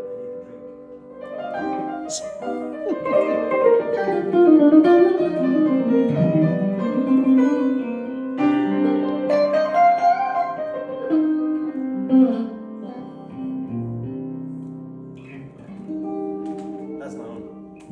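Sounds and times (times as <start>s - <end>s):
plucked guitar: 0.0s - 17.9s.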